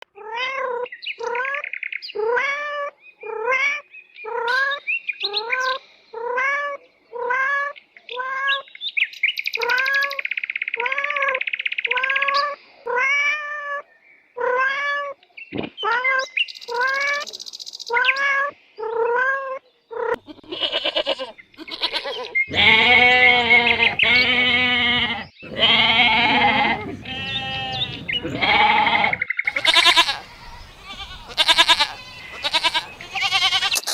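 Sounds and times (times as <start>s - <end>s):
farm animals calling: 18.0s - 33.9s.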